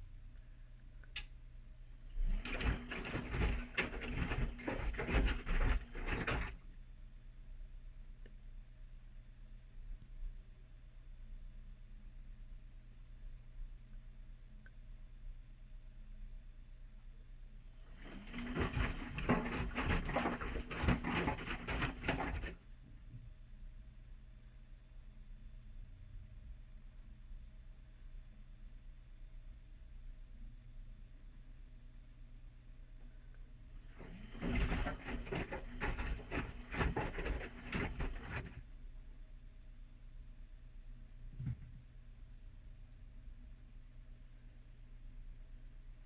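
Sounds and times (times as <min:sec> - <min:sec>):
washing machine motor humming: 0:02.1 - 0:06.6, 0:17.9 - 0:22.6, 0:33.7 - 0:38.6
wet laundry sloshing and thudding: 0:02.1 - 0:06.6, 0:17.9 - 0:22.6, 0:33.8 - 0:38.6.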